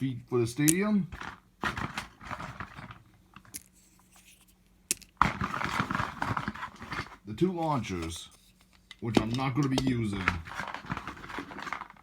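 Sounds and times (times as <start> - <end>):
plastic packaging crinkling: 9.6 - 12.0.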